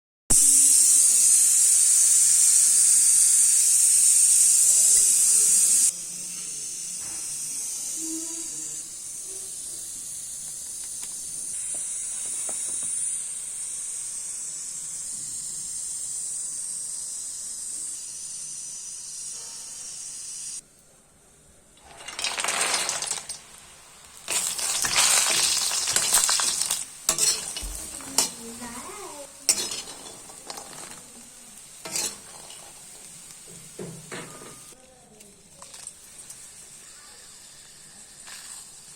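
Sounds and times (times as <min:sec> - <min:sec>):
food sizzling in hot oil: 0:00.3 - 0:20.6, 0:21.6 - 0:38.9
utensil scraping and clattering in pan: 0:21.8 - 0:34.8.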